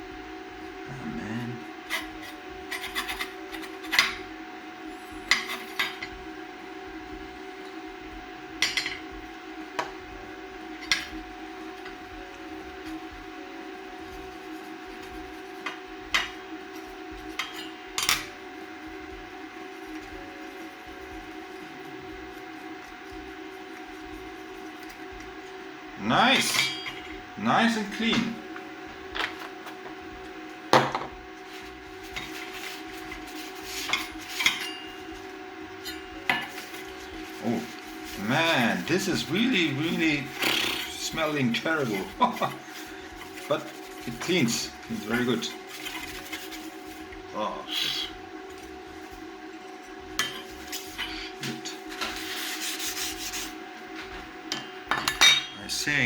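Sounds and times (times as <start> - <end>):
steady hum: 0.0 - 56.0
hard object knocking on workbench: 30.7 - 31.1
scrubbing and wiping surface: 31.5 - 34.5, 51.8 - 53.6.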